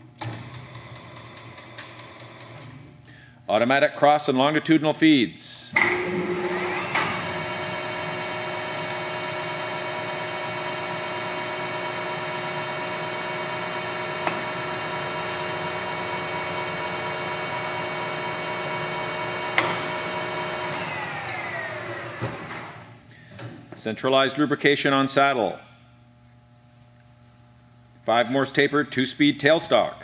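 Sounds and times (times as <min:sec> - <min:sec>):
lathe running with whine: 0:05.9 - 0:22.8.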